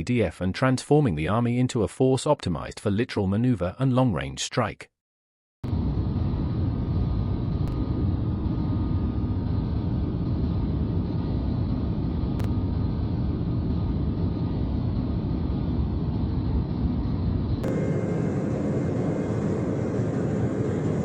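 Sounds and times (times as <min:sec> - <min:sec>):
aircraft engine rumble: 0:05.7 - 0:21.0
faint whining tones: 0:06.0 - 0:21.0.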